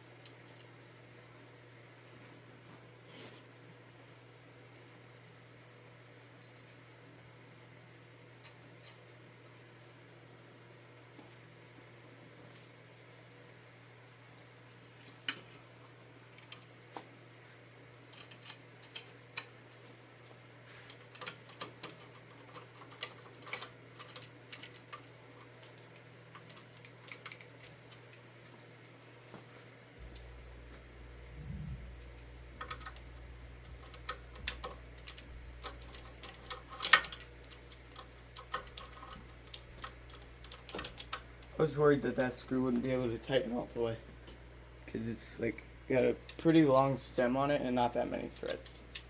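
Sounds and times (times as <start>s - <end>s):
low steady hum: 0.0s - 49.0s
metal clicks of hand tools: 33.8s - 41.5s, 48.4s - 49.0s.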